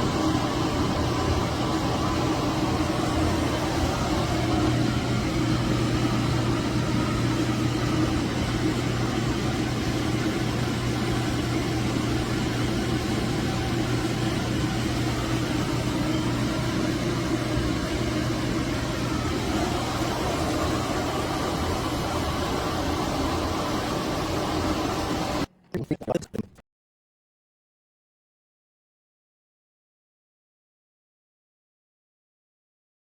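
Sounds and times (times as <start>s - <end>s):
fan running with air rush: 0.0s - 25.5s.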